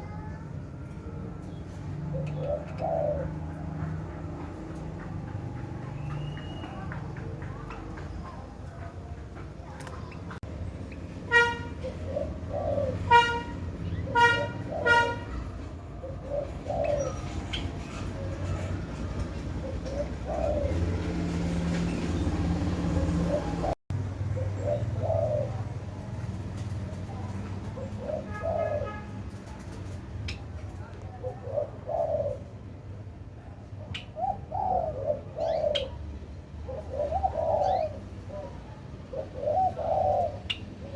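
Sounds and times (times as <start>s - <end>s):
doves cooing: 1.4s - 9.3s, 11.3s - 33.0s, 33.6s - 40.9s.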